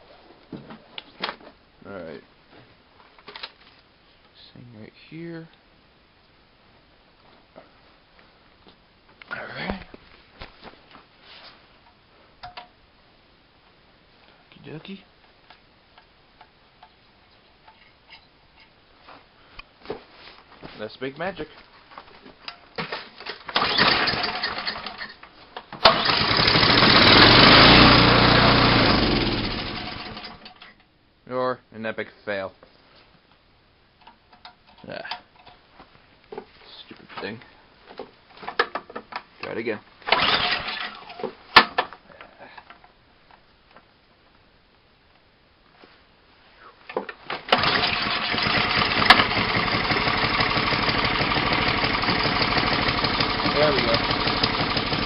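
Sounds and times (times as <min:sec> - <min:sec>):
engine pull-start: 0:23.5 - 0:25.2, 0:25.8 - 0:30.6, 0:40.1 - 0:41.2, 0:47.4 - 0:55.0
small engine running: 0:25.9 - 0:30.4, 0:47.5 - 0:55.0.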